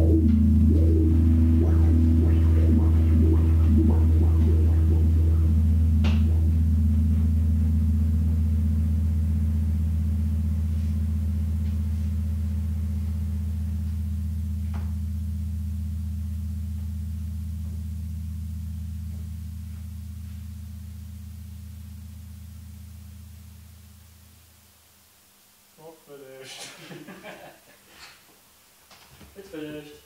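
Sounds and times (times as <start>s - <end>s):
low guitar note ringing out: 0.0s - 24.4s.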